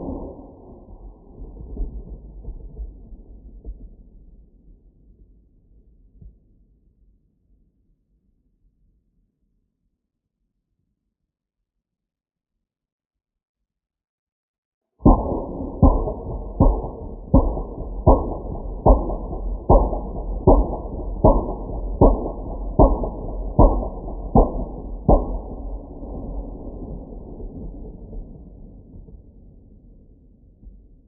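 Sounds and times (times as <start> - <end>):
distant artillery explosions: 0.0 - 3.0, 15.0 - 29.4
low rumble: 0.0 - 3.5, 15.0 - 31.0.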